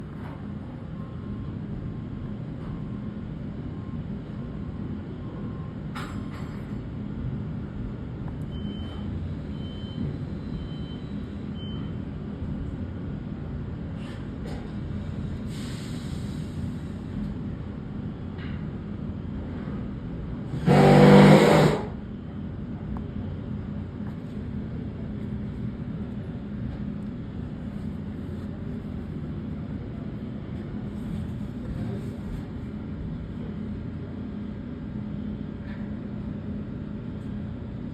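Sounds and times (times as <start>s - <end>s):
air hiss: 15.5s - 16.9s.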